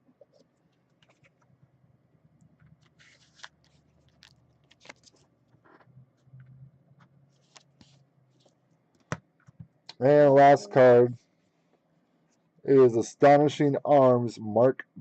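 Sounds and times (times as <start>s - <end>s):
low steady hum: 0.0s - 15.0s
small clicks and scrapes of handling: 0.2s - 1.5s, 2.5s - 10.0s.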